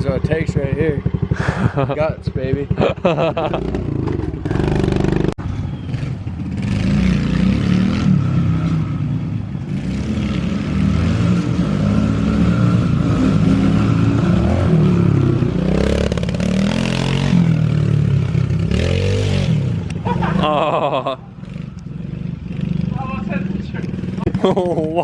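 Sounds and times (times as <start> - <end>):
pit bike engine revving: 0.0 - 9.0, 9.7 - 25.0.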